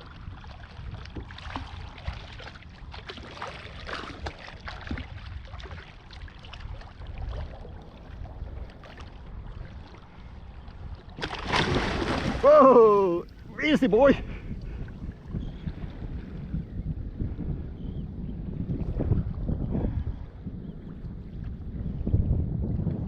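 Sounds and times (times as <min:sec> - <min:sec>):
water sloshing against a kayak: 0:00.0 - 0:23.0
wind on microphone: 0:00.0 - 0:23.0
small splashes: 0:11.1 - 0:13.4.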